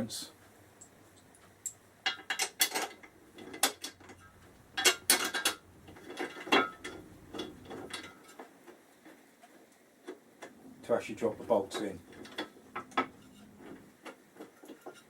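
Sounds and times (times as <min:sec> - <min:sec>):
metal parts clinking and knocking: 0:00.8 - 0:08.2.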